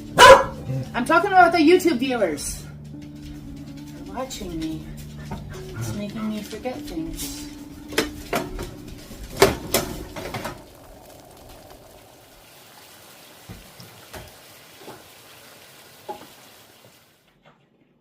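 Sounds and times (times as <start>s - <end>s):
dishes and utensils clattering: 2.9s - 10.6s.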